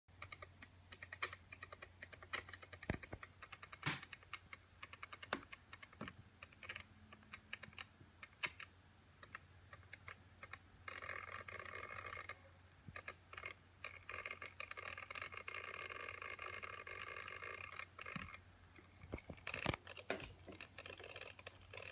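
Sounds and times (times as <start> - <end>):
laptop keys clicking: 0.2 - 12.4
laptop buzzing noise: 10.0 - 18.4.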